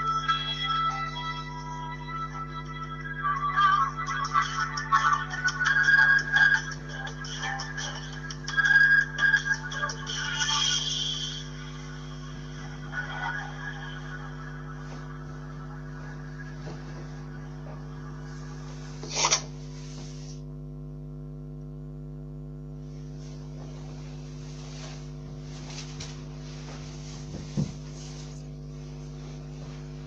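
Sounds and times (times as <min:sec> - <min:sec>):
electrical hum: 0:00.0 - 0:30.0
room noise: 0:00.0 - 0:30.0.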